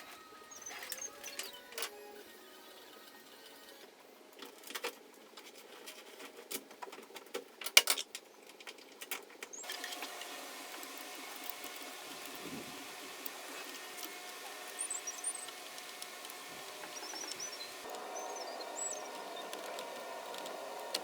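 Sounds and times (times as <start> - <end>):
steady hiss: 9.7 - 21.0
hand tools clicking and tapping: 13.2 - 21.0.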